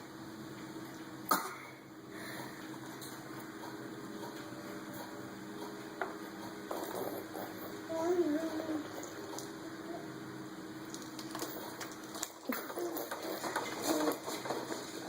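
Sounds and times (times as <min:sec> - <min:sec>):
faint steady hum: 0:00.0 - 0:15.0
person coughing: 0:01.3 - 0:01.8.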